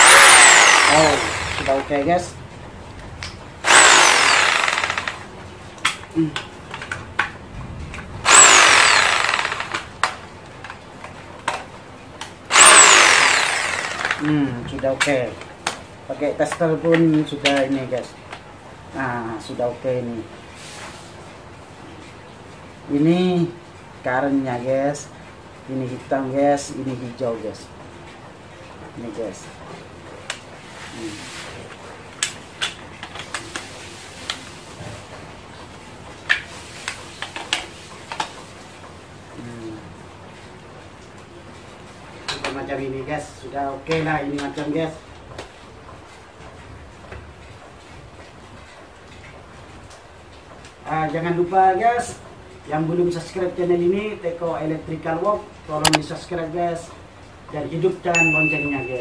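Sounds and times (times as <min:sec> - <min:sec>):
power drill whining: 0:00.0 - 0:02.1, 0:03.6 - 0:05.3, 0:08.2 - 0:10.2, 0:12.5 - 0:14.3
handling clicks: 0:55.8 - 0:56.0.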